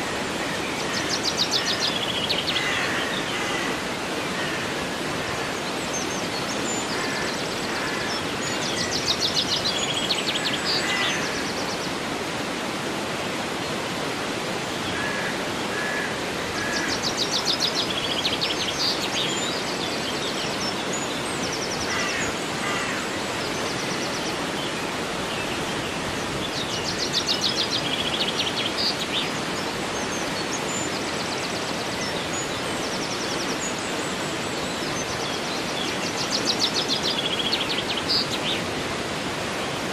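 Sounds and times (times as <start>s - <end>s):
river rushing: 0.0s - 39.9s.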